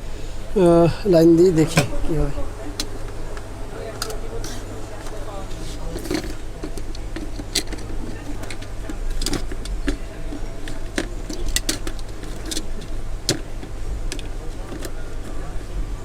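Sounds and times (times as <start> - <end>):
low mains hum: 0.0 - 16.0
clicks and taps of handled parts: 5.9 - 15.0.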